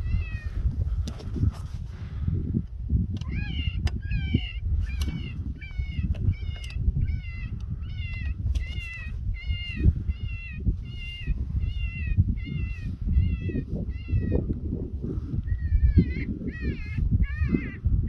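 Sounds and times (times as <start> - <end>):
electronic prey distress call: 3.2 - 14.3.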